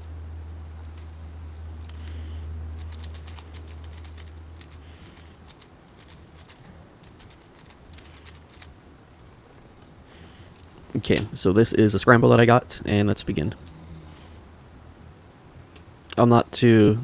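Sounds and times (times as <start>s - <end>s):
low hum: 0.0s - 17.0s
puzzle cube clicking: 0.7s - 2.2s, 2.8s - 8.7s.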